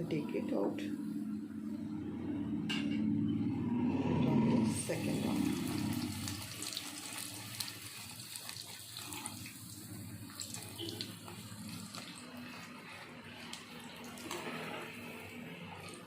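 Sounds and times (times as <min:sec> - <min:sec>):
bread deep-frying in oil: 0:04.7 - 0:16.0.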